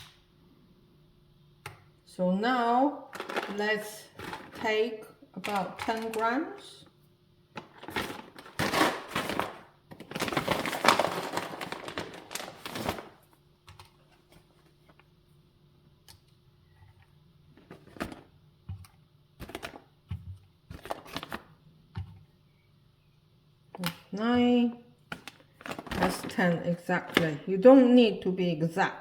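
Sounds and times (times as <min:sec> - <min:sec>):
dried mushroom pieces clattering: 0:03.1 - 0:04.8.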